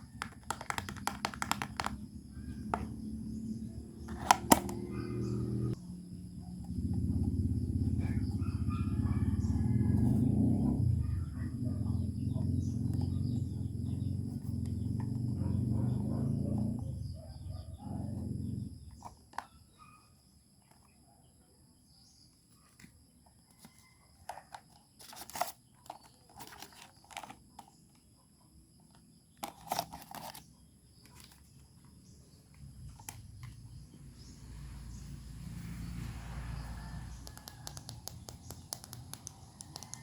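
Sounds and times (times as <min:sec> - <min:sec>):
small clicks and taps: 0:00.2 - 0:02.0, 0:37.2 - 0:40.0.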